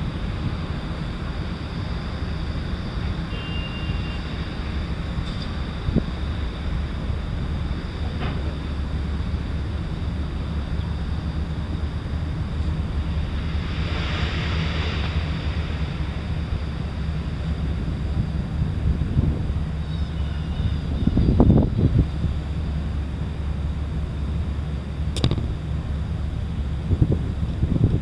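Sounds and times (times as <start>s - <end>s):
steady low rumble: 0.0s - 3.4s, 4.0s - 28.0s
wind buffeting microphone: 0.0s - 28.0s
hiss: 12.5s - 18.1s.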